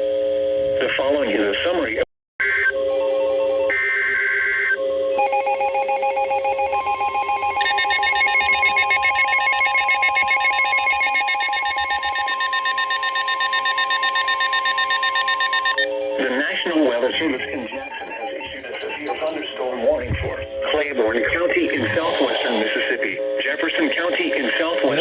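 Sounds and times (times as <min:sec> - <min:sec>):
pulsing electronic alarm: 0:02.4 - 0:22.6
buzzing data tones: 0:05.2 - 0:16.0
steady high tone: 0:05.2 - 0:22.7.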